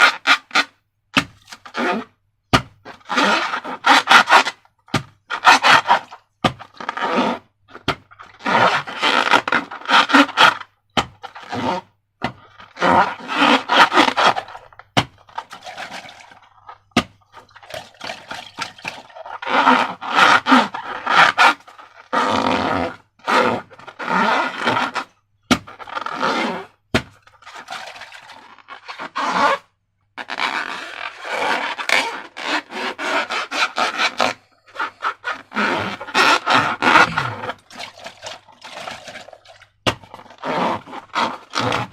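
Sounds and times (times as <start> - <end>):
slime squelching: 34.8 - 41.9.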